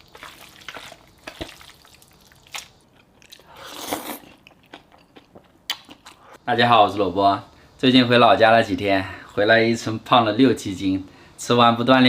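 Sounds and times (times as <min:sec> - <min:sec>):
person chewing and biting: 0:00.0 - 0:06.3.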